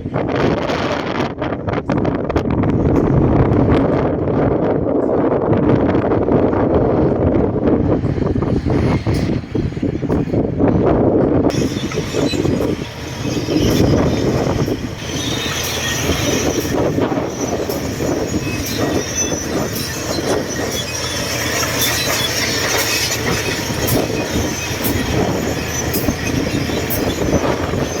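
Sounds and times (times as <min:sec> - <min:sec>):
crawler tracks clanking and squealing: 0:00.0 - 0:28.0
bulldozer engine: 0:06.6 - 0:28.0.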